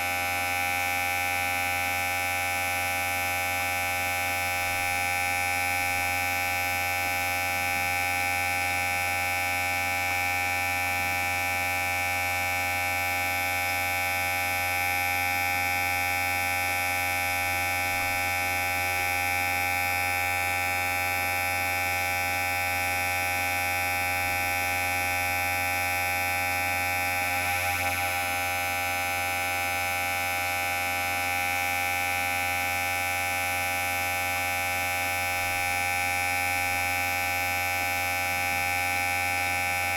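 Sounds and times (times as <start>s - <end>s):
electric hair clipper buzzing: 14.8s - 30.0s.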